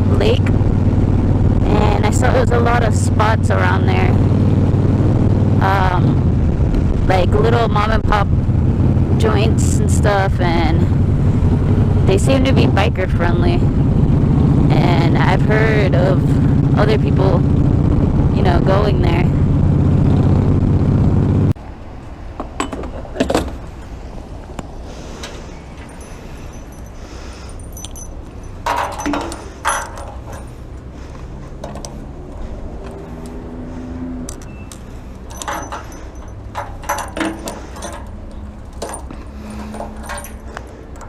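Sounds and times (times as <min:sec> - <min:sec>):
low steady hum: 0:00.0 - 0:41.0
keys jangling: 0:25.8 - 0:30.6, 0:34.3 - 0:40.7.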